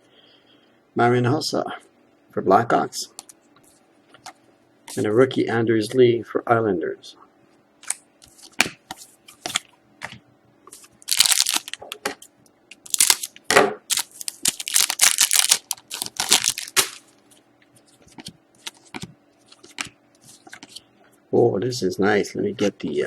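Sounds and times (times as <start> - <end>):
foil wrapper tearing and crinkling: 11.0 - 11.9, 12.8 - 17.2.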